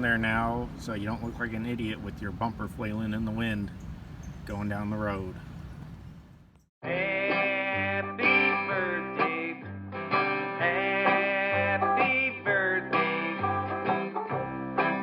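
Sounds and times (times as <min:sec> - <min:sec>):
country tune on plucked guitar: 0:06.8 - 0:15.0.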